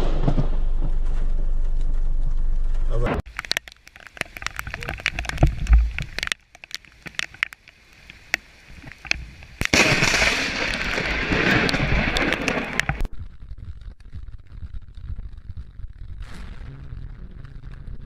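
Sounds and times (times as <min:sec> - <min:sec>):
low rumble: 0:00.0 - 0:03.3, 0:09.7 - 0:18.0
loud crackling: 0:00.0 - 0:18.0
sharp thunder crack: 0:09.6 - 0:14.2.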